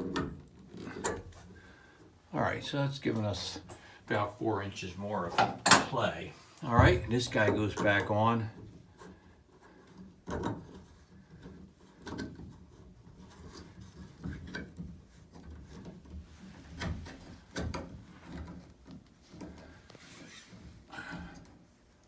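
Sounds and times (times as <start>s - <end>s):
shower fitting knocks and clicks: 5.3s - 6.0s.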